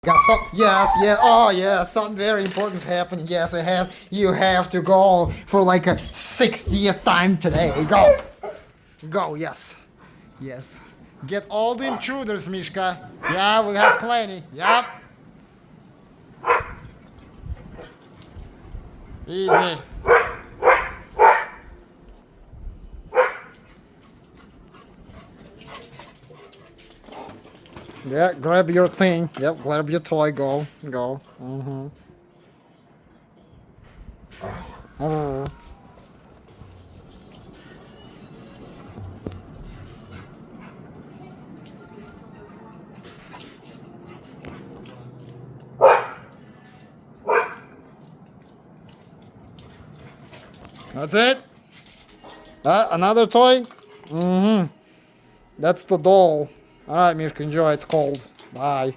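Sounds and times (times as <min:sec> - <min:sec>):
dog barking: 0:00.0 - 0:01.5, 0:07.8 - 0:08.6, 0:13.2 - 0:15.1, 0:16.4 - 0:16.8, 0:19.4 - 0:21.7, 0:23.1 - 0:23.5, 0:45.8 - 0:46.4, 0:47.2 - 0:47.7.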